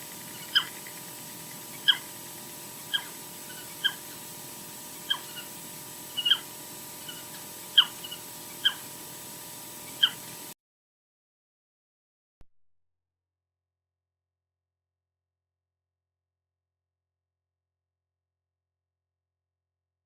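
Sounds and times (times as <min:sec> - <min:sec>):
osprey whistled chirps: 0:00.0 - 0:02.2, 0:02.9 - 0:04.2, 0:05.0 - 0:09.0, 0:09.8 - 0:10.4
steady hiss: 0:00.0 - 0:10.6.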